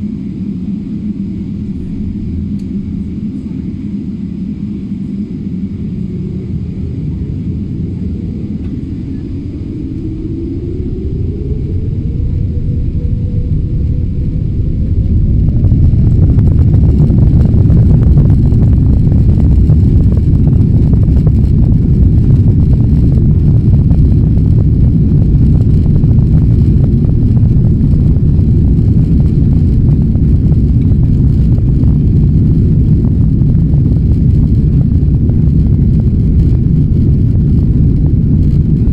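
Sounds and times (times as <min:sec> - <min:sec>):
jet engines spooling up: 0:00.0 - 0:38.9.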